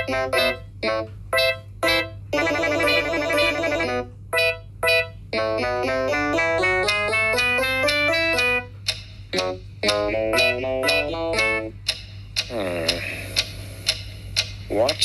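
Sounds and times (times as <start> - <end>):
keyboard music: 0.0 - 11.8
steady low hum: 0.0 - 15.0.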